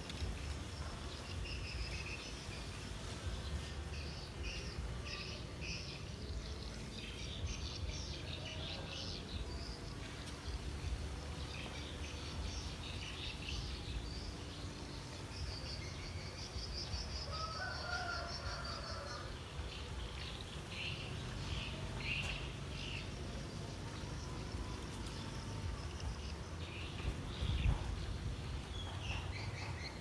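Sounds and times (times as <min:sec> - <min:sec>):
insects: 0:08.0 - 0:27.9.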